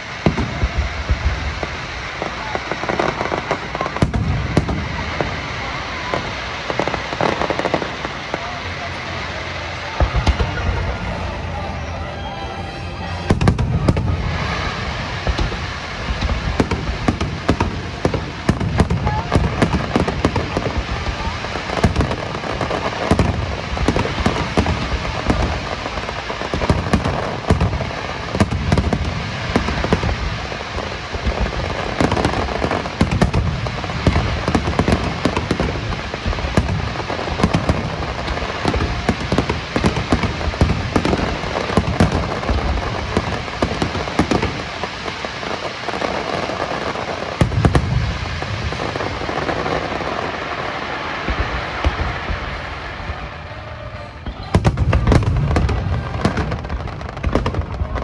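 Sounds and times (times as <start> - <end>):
fireworks booming and crackling: 0.0 - 58.0.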